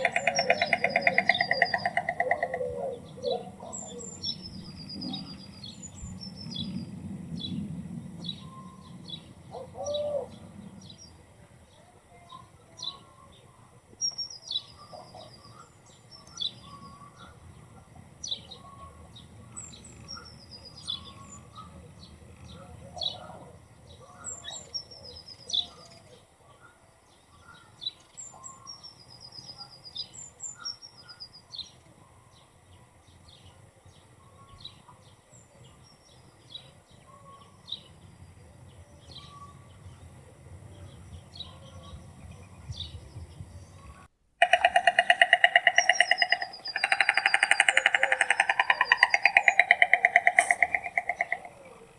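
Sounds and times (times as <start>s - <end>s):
small birds chirping: 0.0s - 51.9s
faint low hum: 31.2s - 44.7s.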